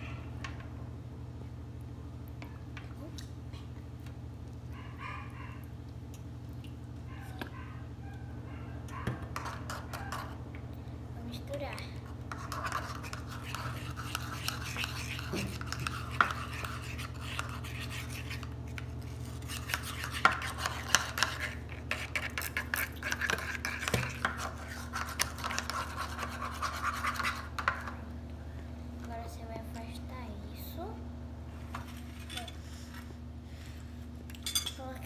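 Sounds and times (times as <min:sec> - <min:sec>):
steady low hum: 0:00.0 - 0:35.0
spoon stirring in a pot: 0:08.9 - 0:10.4, 0:11.8 - 0:28.2.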